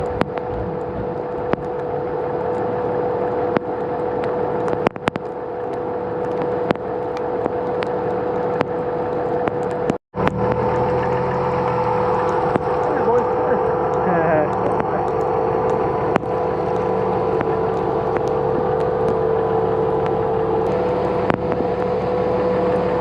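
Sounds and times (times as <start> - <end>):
vehicle engine humming: 0.0 - 23.0
sharp clicks and taps: 3.5 - 10.6, 12.1 - 19.2.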